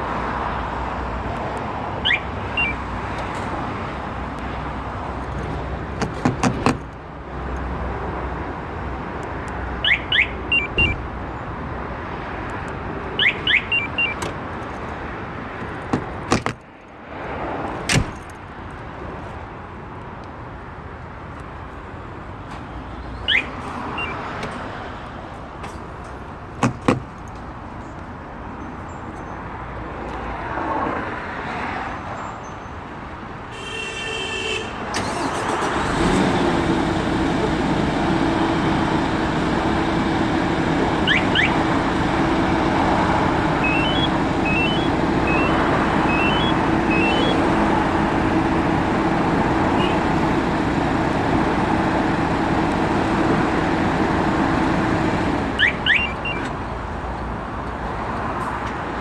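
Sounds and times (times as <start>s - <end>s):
diesel truck engine running: 0.0s - 16.6s, 35.0s - 57.1s
short alarm beeps: 2.0s - 2.8s, 9.8s - 11.0s, 13.2s - 14.2s, 23.3s - 24.2s, 41.0s - 41.6s, 43.6s - 47.4s, 55.6s - 56.5s
short chirps: 43.6s - 47.4s.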